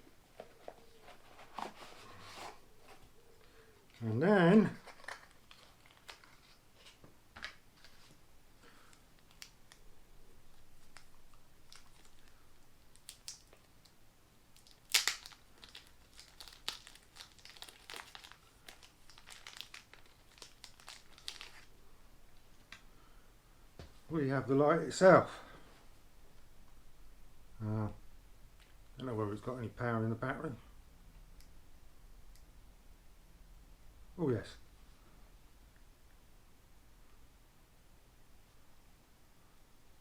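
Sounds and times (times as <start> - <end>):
packaging crinkling: 4.7 - 7.0, 10.8 - 13.7, 14.6 - 21.7.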